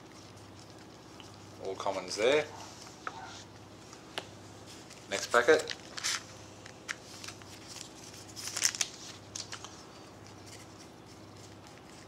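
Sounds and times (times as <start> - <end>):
cards being handled: 3.9 - 12.0
foil wrapper crinkling: 4.8 - 12.0.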